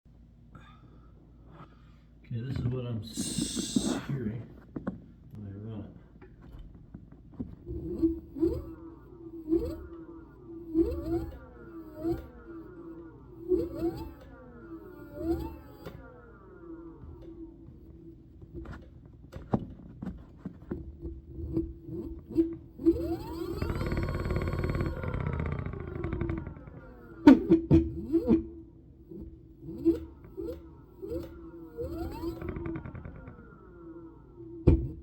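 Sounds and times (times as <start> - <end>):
scooter motor clicks and knocks: 6.2 - 35.0
electric motor whine: 7.5 - 19.4, 21.2 - 35.0
fast grinding rattle: 21.8 - 27.4, 30.2 - 33.9.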